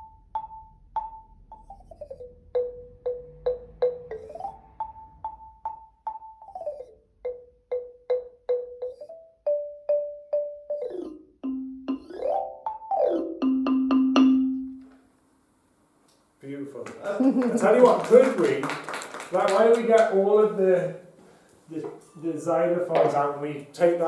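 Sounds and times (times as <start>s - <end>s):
xylophone notes: 0.0s - 14.9s.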